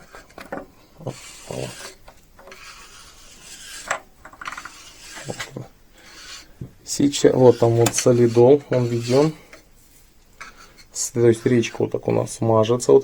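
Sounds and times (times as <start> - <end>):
metal parts scraping: 0.0 - 5.6, 7.2 - 9.4.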